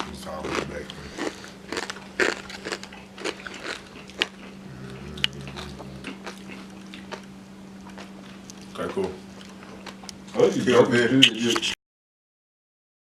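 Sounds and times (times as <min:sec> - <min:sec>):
low hum: 0:00.0 - 0:10.4
person chewing crispy bacon: 0:00.0 - 0:10.4.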